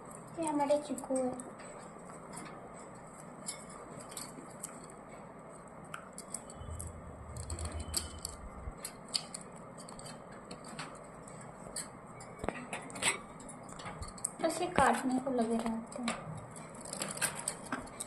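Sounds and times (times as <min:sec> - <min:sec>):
low rumble: 0:06.5 - 0:08.8.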